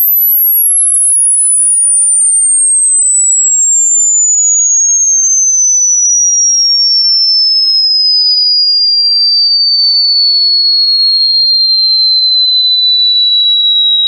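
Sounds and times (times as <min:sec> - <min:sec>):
high electronic tone sliding down: 0:00.0 - 0:08.1.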